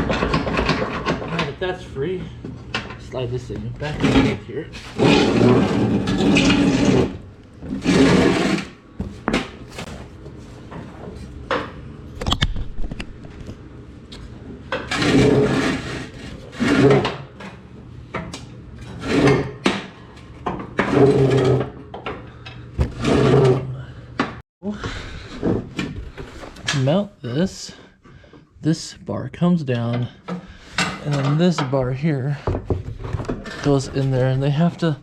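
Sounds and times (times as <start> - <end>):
metal deck scraping across floor: 3.8 - 8.8.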